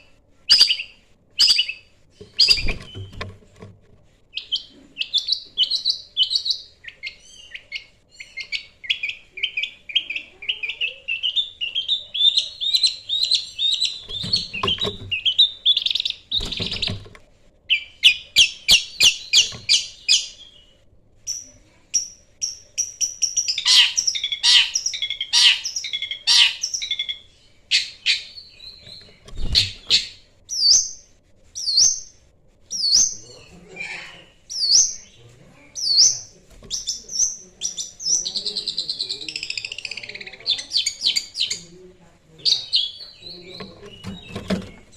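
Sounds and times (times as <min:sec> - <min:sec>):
bird singing scratchy song: 0:00.0 - 0:03.7, 0:04.3 - 0:41.8, 0:42.4 - 0:44.9.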